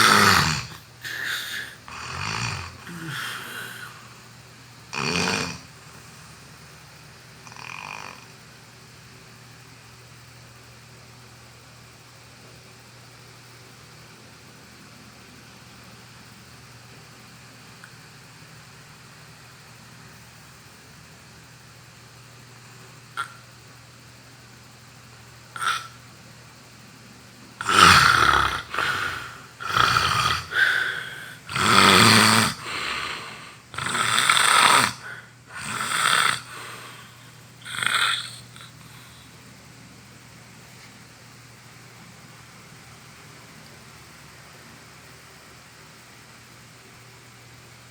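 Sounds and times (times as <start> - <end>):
person snoring loudly: 0.0 - 4.2, 4.9 - 6.0, 7.4 - 8.3, 23.2 - 23.4, 25.5 - 26.0, 27.6 - 39.2
steady hiss: 0.0 - 8.8, 13.2 - 47.9.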